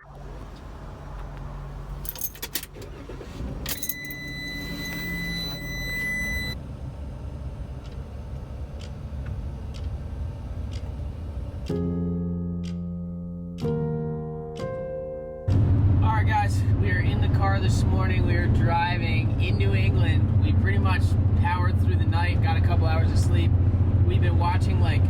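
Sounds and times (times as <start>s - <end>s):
road noise rumble: 0.0s - 12.8s, 15.5s - 25.0s
steady high beep: 3.9s - 6.6s.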